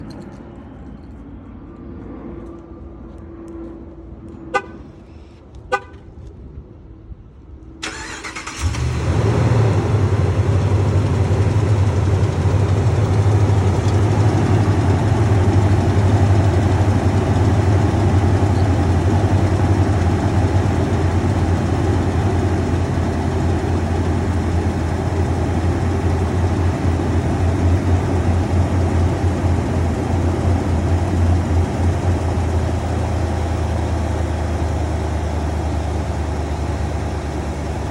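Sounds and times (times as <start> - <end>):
engine cranking and running: 7.8 - 37.9
engine ticking: 7.8 - 37.9
loud engine cooling fan: 7.8 - 37.9.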